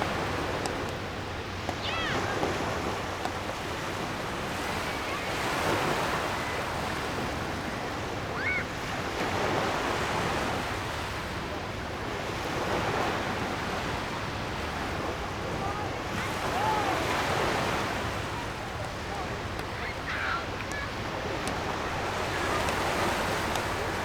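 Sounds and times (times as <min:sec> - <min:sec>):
surf washing in and out: 0:00.0 - 0:24.0
faint voices of people: 0:15.3 - 0:24.0.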